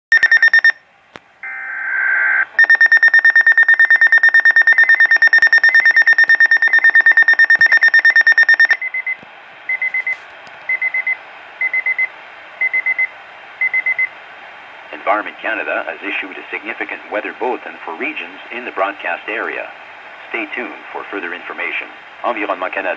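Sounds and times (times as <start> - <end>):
fast-pulsed electronic alarm beep: 0.1 - 0.8, 2.6 - 9.2
digital data tones: 2.6 - 9.2
short beeps: 2.6 - 14.1
radio hiss: 14.1 - 22.9.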